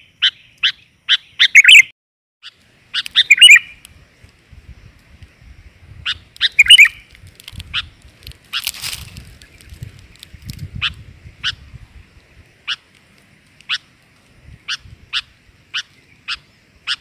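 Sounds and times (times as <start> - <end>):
bird chirping and trilling: 0.0 - 3.8, 5.9 - 7.1, 7.7 - 9.9, 10.6 - 11.9, 13.7 - 17.0.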